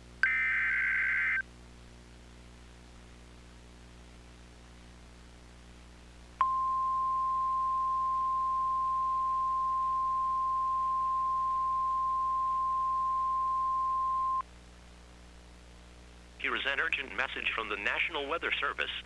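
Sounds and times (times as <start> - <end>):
steady pure alarm tone: 6.4 - 14.4.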